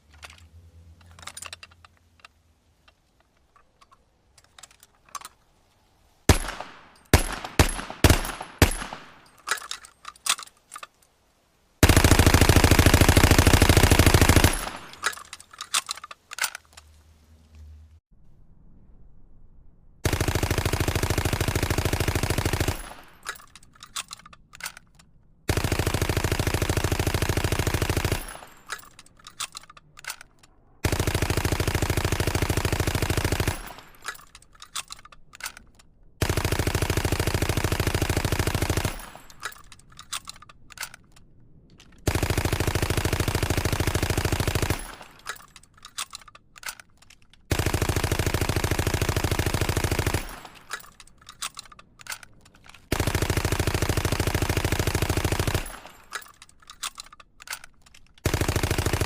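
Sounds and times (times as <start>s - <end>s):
submachine gun automatic bursts: 6.3s - 9.6s, 11.8s - 16.0s, 20.0s - 24.1s, 25.5s - 30.2s, 30.8s - 35.6s, 36.2s - 40.9s, 42.0s - 46.8s, 47.5s - 52.2s, 52.8s - 59.0s
sharp clicks and clatters: 20.2s - 59.0s.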